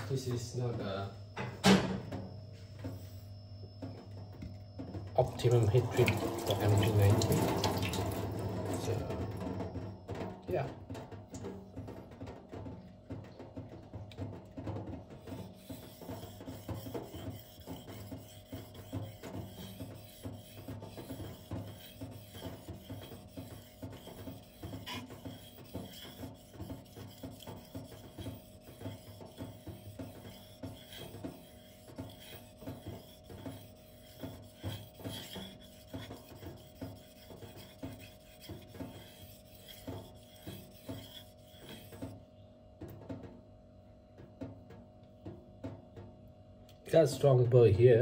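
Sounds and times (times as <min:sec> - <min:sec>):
knife scraping on whetstone: 0:05.4 - 0:09.1, 0:15.2 - 0:42.2.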